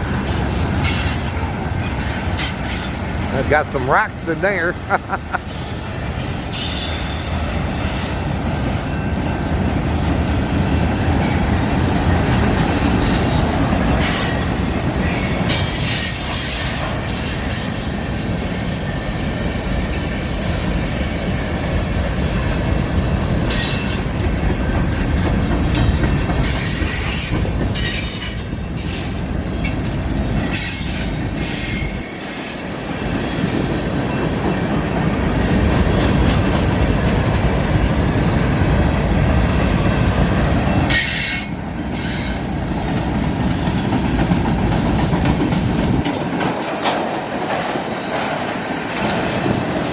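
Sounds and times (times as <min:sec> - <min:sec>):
train wheels rumbling on rails: 0:00.0 - 0:49.9
clanks at rail joints: 0:00.2 - 0:04.1, 0:23.5 - 0:37.9, 0:40.8 - 0:49.9
high wheel squeal: 0:14.0 - 0:22.1.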